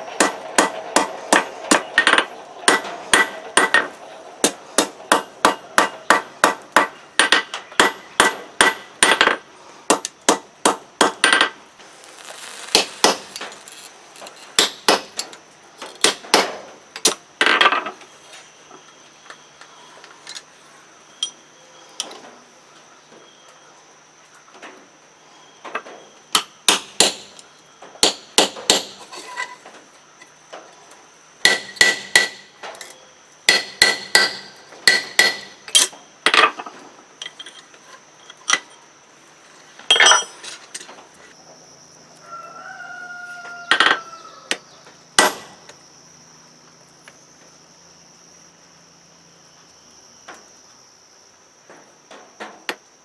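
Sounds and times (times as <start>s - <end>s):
hammer striking steel on anvil: 0.2s - 9.3s, 31.4s - 32.5s, 33.5s - 35.9s.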